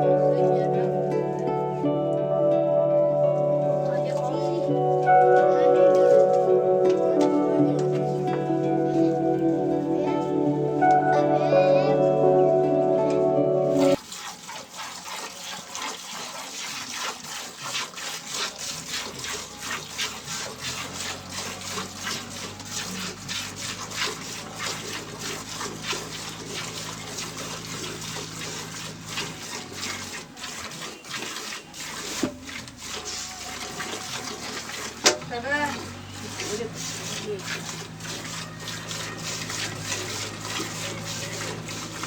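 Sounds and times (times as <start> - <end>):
milk squirting into a pail: 13.9 - 42.0.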